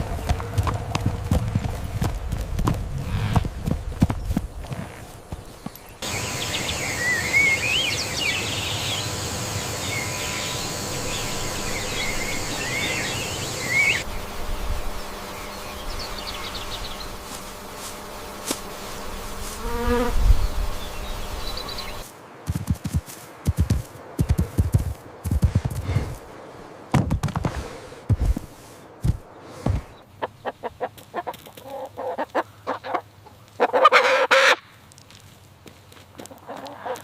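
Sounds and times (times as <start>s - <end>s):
insects buzzing: 0.0s - 30.1s
short chirping calls: 5.6s - 14.0s.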